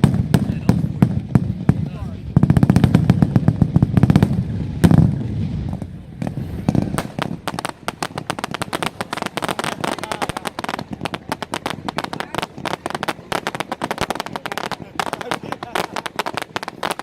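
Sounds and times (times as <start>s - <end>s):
deep rumble of firework blast: 0.0s - 17.0s
fireworks crackling: 0.0s - 17.0s.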